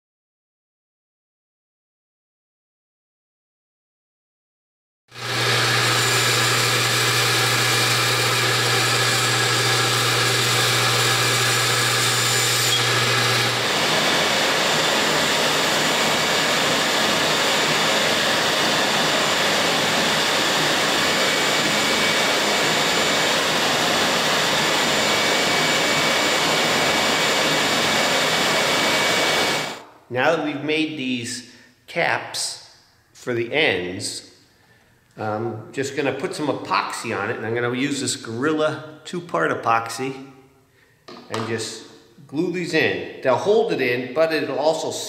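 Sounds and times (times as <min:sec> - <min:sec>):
power tool running: 0:05.1 - 0:29.8.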